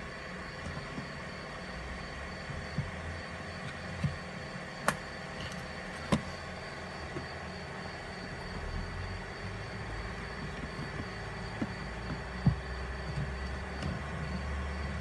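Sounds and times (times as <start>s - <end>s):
background hum and hiss: 0.0s - 15.0s.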